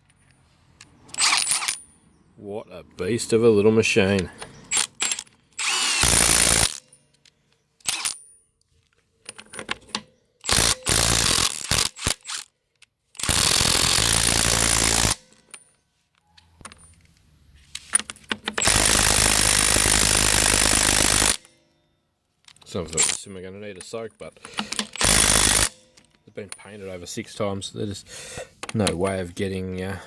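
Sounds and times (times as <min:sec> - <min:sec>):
impact wrench hammering wheel nuts: 0:01.1 - 0:02.0, 0:04.5 - 0:07.0, 0:07.8 - 0:08.3, 0:09.4 - 0:12.4, 0:13.2 - 0:15.5, 0:18.2 - 0:21.5, 0:24.4 - 0:26.7.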